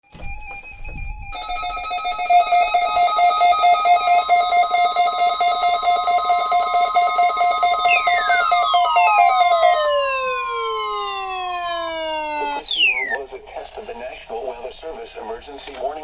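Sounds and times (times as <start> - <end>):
buzzy electronic alert tone: 1.1 - 13.3.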